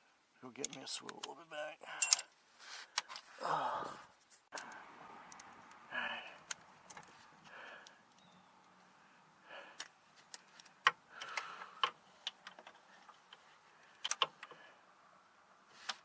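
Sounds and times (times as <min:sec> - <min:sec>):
hand tools clicking and clinking: 0:01.9 - 0:02.4.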